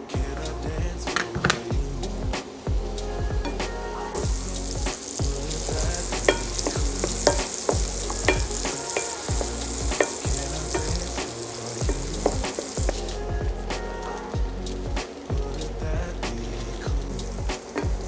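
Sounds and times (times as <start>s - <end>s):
vegetables sizzling in frying pan: 4.2s - 13.0s.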